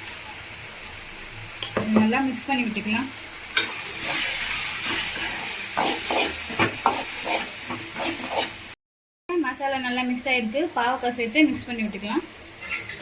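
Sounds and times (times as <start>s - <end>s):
masala sizzling in oil: 0.0s - 8.8s, 9.4s - 13.0s
spoon stirring and scraping: 3.6s - 8.6s, 12.6s - 13.0s.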